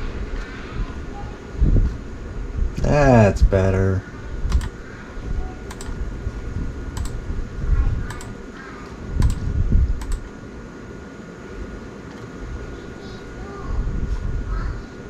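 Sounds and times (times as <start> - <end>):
keyboard clicking and tapping: 4.5 - 4.8, 5.7 - 6.0, 7.0 - 7.2, 8.1 - 8.4, 9.2 - 10.3
sharp paired clicks: 4.5 - 4.8, 5.7 - 6.0, 7.0 - 7.2, 8.1 - 8.4, 9.2 - 10.4.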